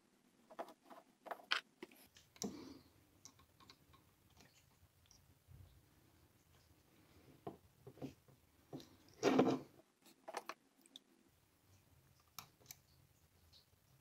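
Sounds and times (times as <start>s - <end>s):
small clicks and knocks: 3.2s - 5.2s, 10.2s - 11.0s.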